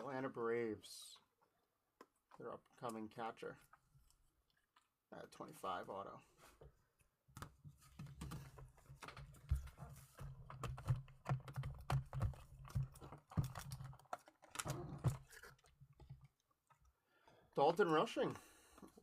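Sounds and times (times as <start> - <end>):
trading cards clicking and tapping: 7.4 - 15.3.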